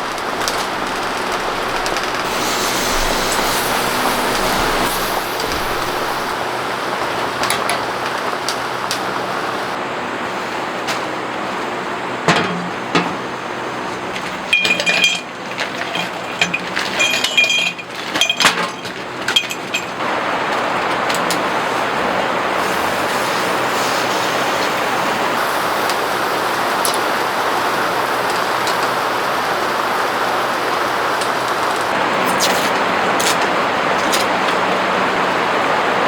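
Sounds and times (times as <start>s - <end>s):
steady rain: 0.0s - 10.6s, 20.0s - 36.0s.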